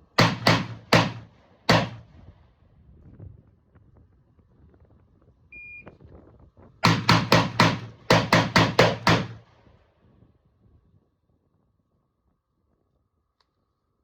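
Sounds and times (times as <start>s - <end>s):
rifle shots fired rapidly: 0.0s - 2.1s, 6.8s - 9.4s
short high beep: 5.6s - 5.9s.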